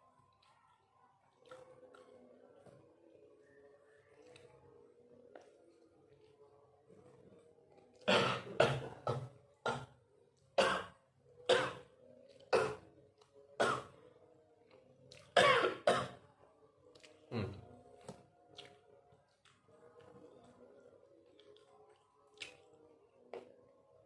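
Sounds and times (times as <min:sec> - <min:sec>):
person coughing hard: 0:15.4 - 0:16.2.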